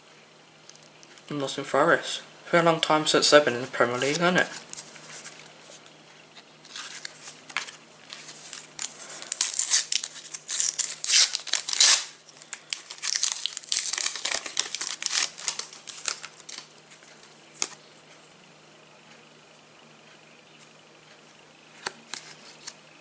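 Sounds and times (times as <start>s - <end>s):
foil wrapper tearing and crinkling: 6.7s - 17.8s.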